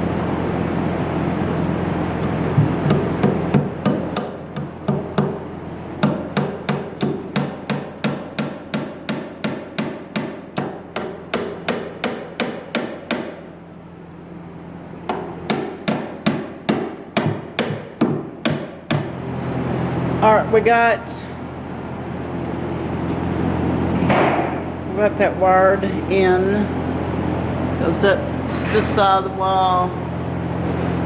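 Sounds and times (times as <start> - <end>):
hammer striking: 2.5 - 5.4, 6.0 - 13.4, 15.1 - 19.2.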